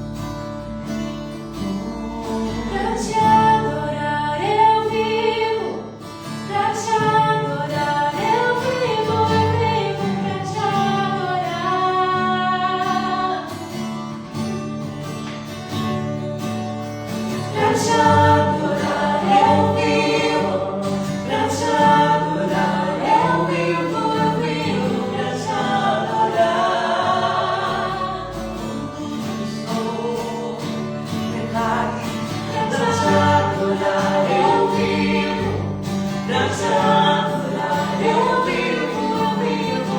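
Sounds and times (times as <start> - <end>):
voices singing together: 1.8 - 13.8, 17.3 - 39.9.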